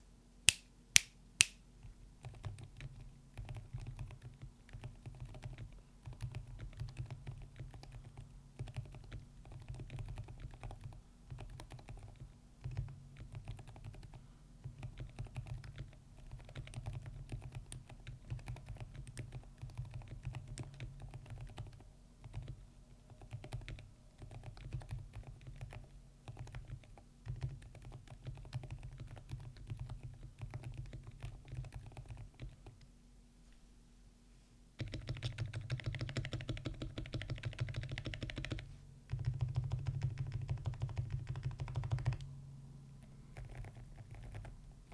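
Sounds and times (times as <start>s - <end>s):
sharp loud clicks: 0.5s - 1.6s
muted mechanical keyboard typing: 2.2s - 32.9s, 34.8s - 42.3s, 43.4s - 44.9s.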